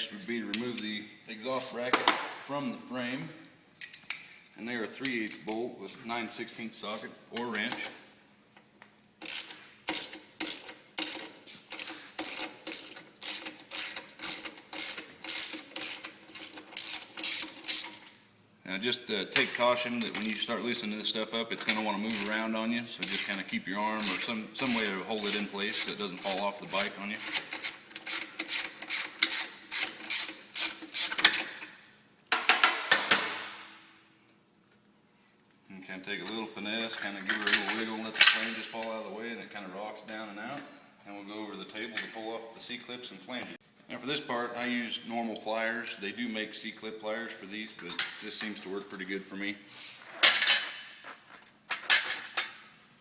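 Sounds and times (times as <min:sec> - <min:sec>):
ratchet wrench clicking: 0:09.2 - 0:18.0, 0:22.1 - 0:22.4, 0:23.0 - 0:23.4, 0:24.0 - 0:31.4.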